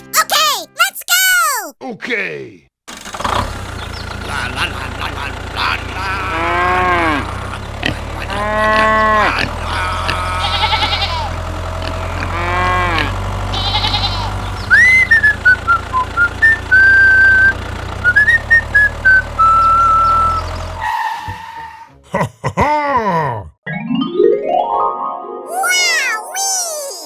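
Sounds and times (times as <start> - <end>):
farm animals bleating: 6.3 - 14.5.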